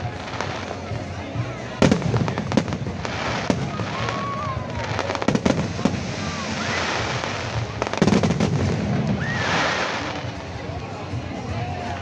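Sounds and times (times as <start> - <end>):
fireworks crackling: 0.0 - 12.0
fireworks bangs: 1.8 - 10.4
whistling fireworks: 1.8 - 10.4.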